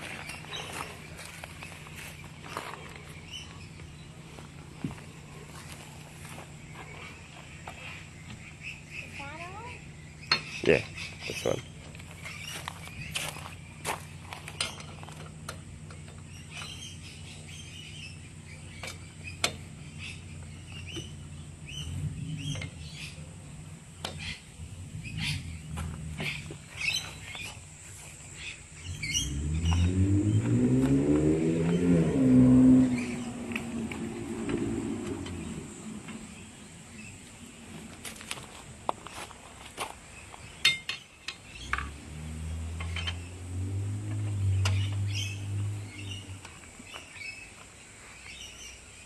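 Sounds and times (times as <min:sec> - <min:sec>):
birds chirping: 0:00.0 - 0:49.0
car driving past: 0:28.8 - 0:37.8, 0:41.5 - 0:47.3.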